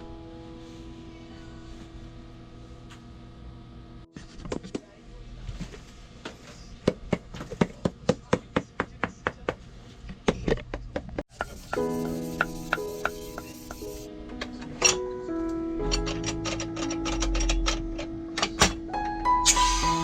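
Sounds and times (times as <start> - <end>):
background music with held tones: 0.0 - 4.1, 11.6 - 20.0.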